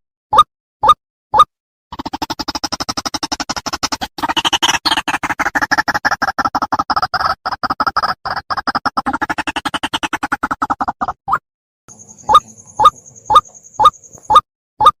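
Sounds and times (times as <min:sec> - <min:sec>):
waterhen calling harsh croaks: 0:02.0 - 0:11.2, 0:11.9 - 0:14.4.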